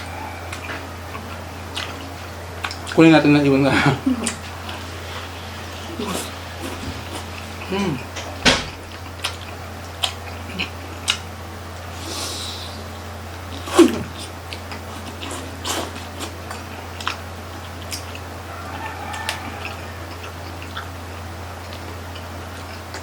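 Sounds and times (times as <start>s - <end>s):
low steady hum: 0.0s - 23.0s
chewing mouth noises: 0.5s - 3.0s, 5.8s - 11.3s, 13.5s - 23.0s.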